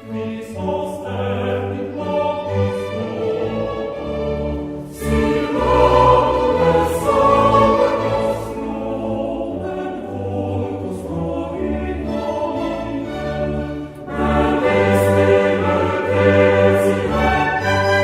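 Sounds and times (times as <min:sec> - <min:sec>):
boys' choir singing: 0:00.0 - 0:18.0
instrumental accompaniment: 0:01.3 - 0:18.0.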